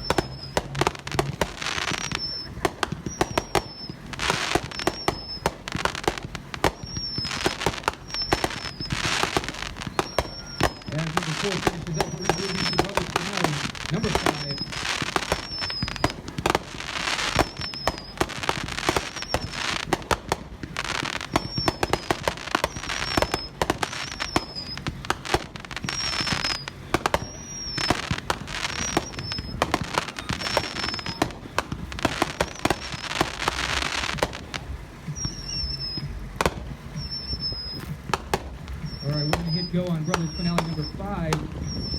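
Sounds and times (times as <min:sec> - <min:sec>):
firework barrage with crackle: 0:00.0 - 0:41.9.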